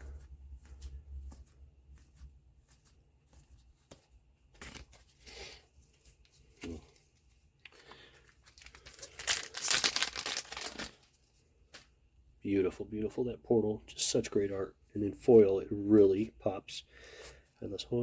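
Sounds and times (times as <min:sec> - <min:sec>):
wrapper tearing: 0:07.6 - 0:11.1
wrapper crinkling: 0:07.6 - 0:11.2.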